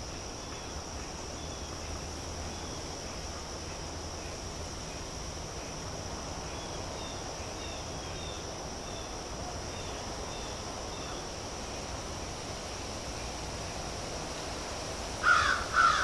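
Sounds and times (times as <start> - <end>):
insect drone: 0.0 - 16.0.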